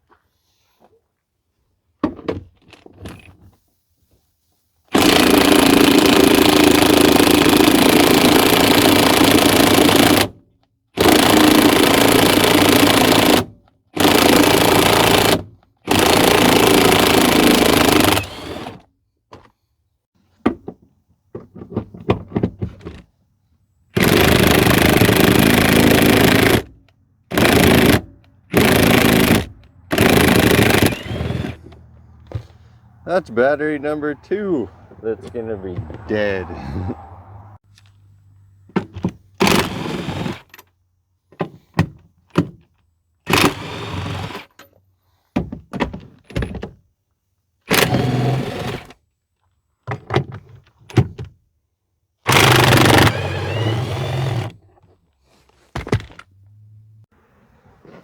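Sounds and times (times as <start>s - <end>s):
cordless power tool running: 15.9s - 18.8s, 27.3s - 31.8s, 52.3s - 54.5s.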